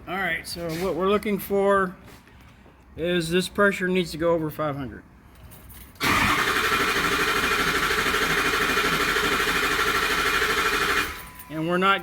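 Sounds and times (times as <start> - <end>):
starter cranking diesel engine: 6.0 - 11.4.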